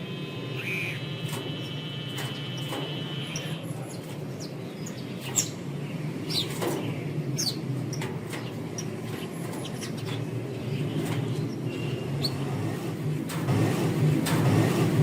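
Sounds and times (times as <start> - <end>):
steady low hum: 0.0 - 6.3
small songbirds chirping: 0.0 - 12.6.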